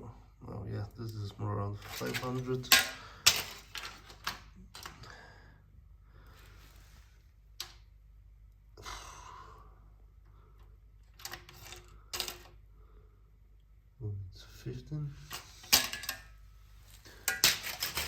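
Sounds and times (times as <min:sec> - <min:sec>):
soft rustle: 0:06.3 - 0:07.4.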